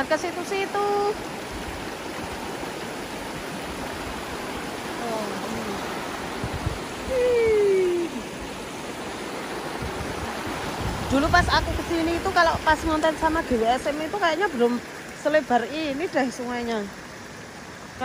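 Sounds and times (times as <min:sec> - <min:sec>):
river water flowing: 0:00.0 - 0:18.0
person calling out: 0:07.0 - 0:08.2.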